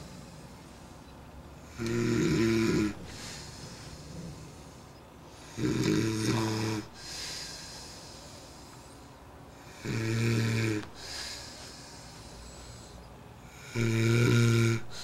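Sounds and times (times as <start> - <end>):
soft breathing: 0.0 - 1.7, 2.9 - 5.6, 6.7 - 9.9, 10.8 - 13.8
man snoring: 1.6 - 4.8, 5.4 - 8.7, 9.6 - 12.9, 13.5 - 15.0.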